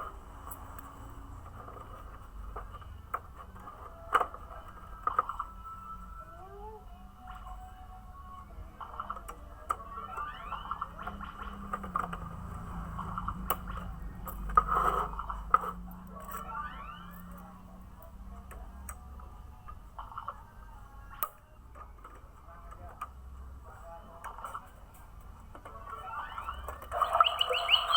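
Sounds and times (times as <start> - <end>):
toy bird chirping: 26.3 - 27.9.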